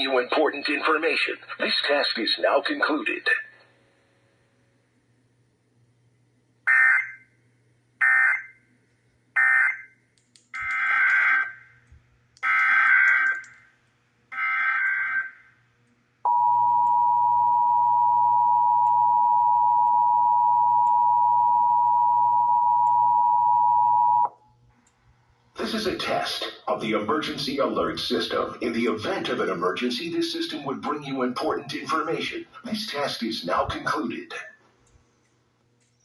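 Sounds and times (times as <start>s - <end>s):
data bursts: 16.3s - 24.3s
two-tone attention signal: 16.3s - 24.3s.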